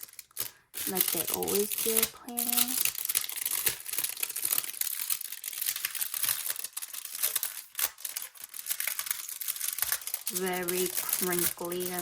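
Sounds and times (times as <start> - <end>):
crinkly wrapping crackling: 0.0 - 12.0.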